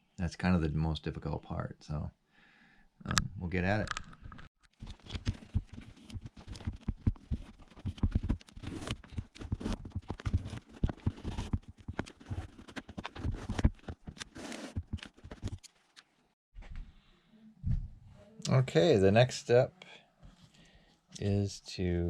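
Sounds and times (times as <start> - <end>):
plastic parts clicking and tapping: 3.1 - 14.3.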